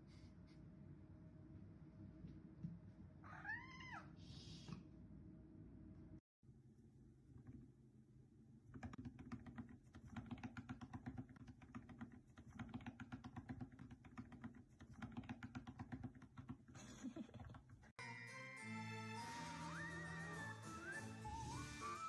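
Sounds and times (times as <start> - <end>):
rapid irregular clicking taps: 8.7 - 18.0
music: 18.0 - 22.0.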